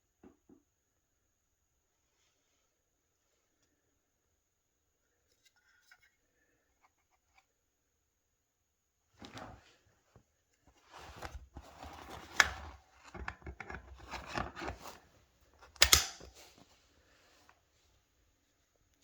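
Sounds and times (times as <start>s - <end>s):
pistol parts clicking and rattling: 15.8s - 16.3s.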